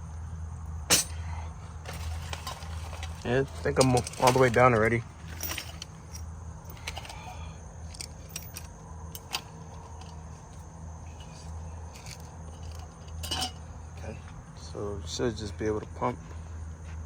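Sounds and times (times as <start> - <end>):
steady low hum: 0.0 - 17.0
clicks and clinks of hose handling: 1.8 - 7.3, 7.9 - 10.2, 11.2 - 13.6.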